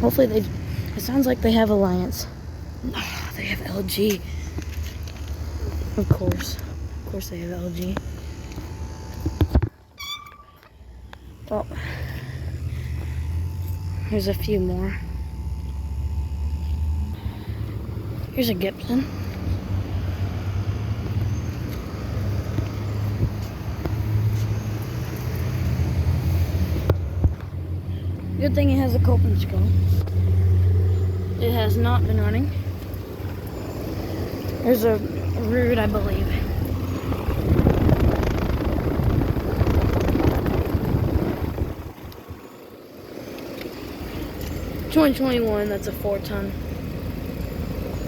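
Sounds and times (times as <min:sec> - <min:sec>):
air conditioner hum and fan: 0:00.0 - 0:19.8
compressor humming: 0:00.0 - 0:48.0
fan whooshing: 0:10.9 - 0:20.9, 0:23.0 - 0:46.3
wind on microphone: 0:36.6 - 0:42.4.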